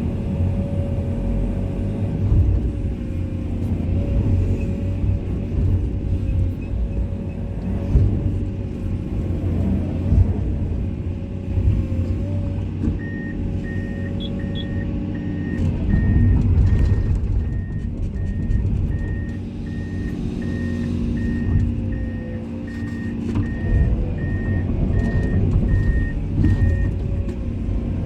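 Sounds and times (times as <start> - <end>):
excavator diesel engine: 0.0 - 28.0
motion alarm beeping: 13.0 - 26.8.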